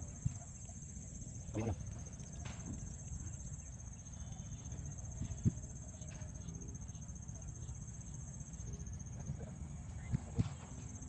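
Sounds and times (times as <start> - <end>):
insects chirring: 0.0 - 11.0.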